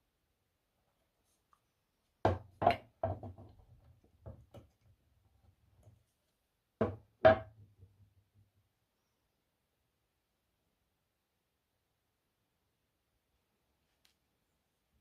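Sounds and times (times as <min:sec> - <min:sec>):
hard objects knocking and clicking: 0:02.3 - 0:04.9, 0:06.8 - 0:07.6.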